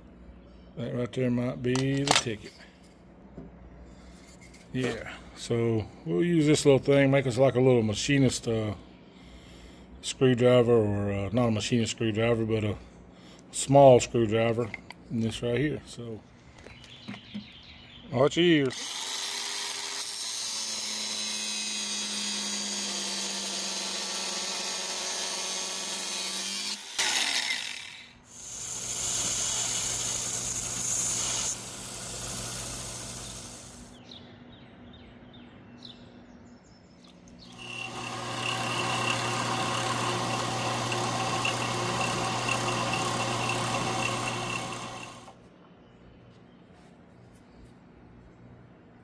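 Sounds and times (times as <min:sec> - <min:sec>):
electric power tool motor running: 0:18.7 - 0:33.9, 0:37.5 - 0:45.4.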